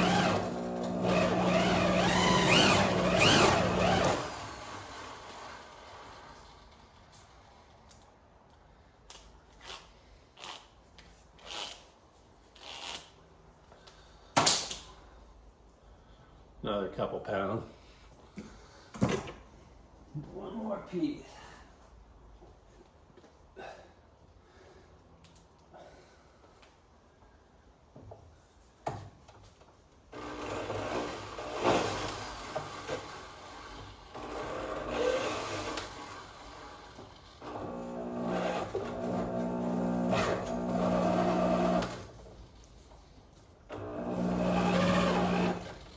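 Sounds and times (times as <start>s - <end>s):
wire stripper scraping insulation: 0.0s - 4.5s, 37.4s - 42.2s, 43.8s - 45.9s.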